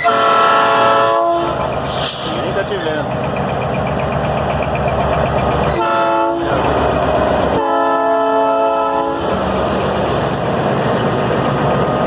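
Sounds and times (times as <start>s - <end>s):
train horn blasts: 0.0s - 1.6s, 5.7s - 6.7s, 7.5s - 9.4s
passing train rumble: 0.0s - 12.0s.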